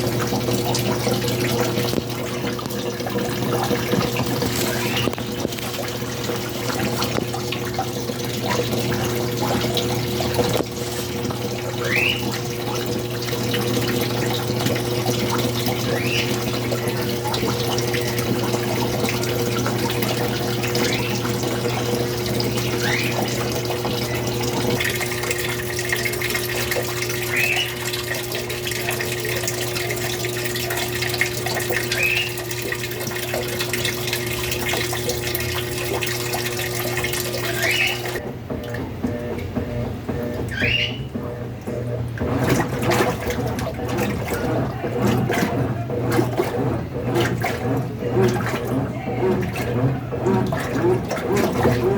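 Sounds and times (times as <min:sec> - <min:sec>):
washing machine motor hum: 0:00.0 - 0:51.9
water sloshing in drum: 0:00.0 - 0:51.9
short rising squeak: 0:40.3 - 0:41.1.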